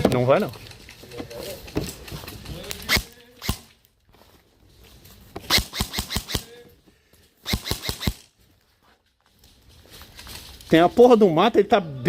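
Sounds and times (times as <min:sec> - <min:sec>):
airsoft guns firing: 0:02.7 - 0:03.7, 0:05.4 - 0:06.6, 0:07.4 - 0:08.3.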